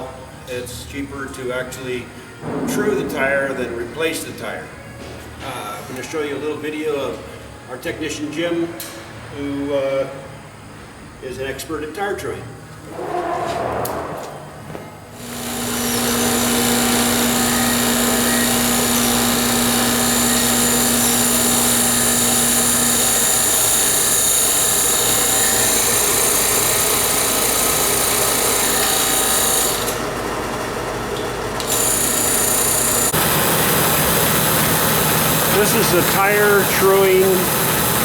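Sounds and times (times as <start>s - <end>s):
machine low hum: 2.3s - 6.0s.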